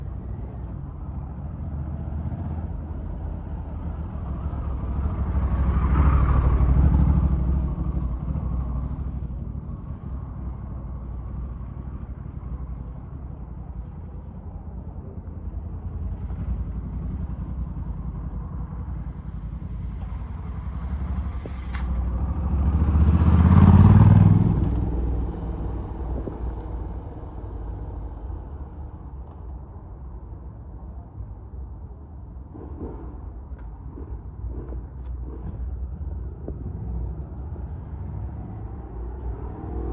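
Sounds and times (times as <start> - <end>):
steady low rumble: 0.0 - 39.9
motorcycle engine passing by: 3.9 - 12.1, 15.9 - 27.8, 36.8 - 39.9.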